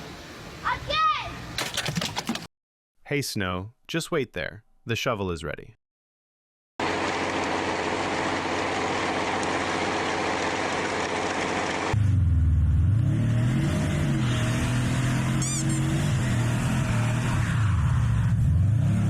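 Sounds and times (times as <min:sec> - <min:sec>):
engine revving: 0:10.0 - 0:19.0.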